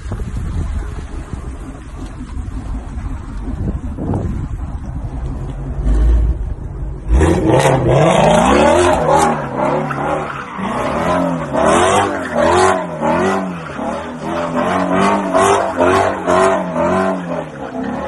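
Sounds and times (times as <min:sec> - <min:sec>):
car engine revving: 0:00.0 - 0:18.0
tyres squealing and skidding: 0:07.6 - 0:18.0.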